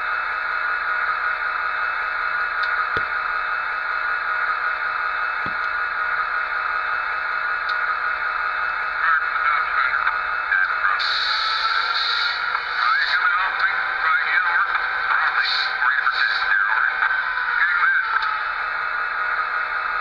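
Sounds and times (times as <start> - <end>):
radio static hiss: 7.5 - 20.0
muffled radio voice: 9.0 - 18.4.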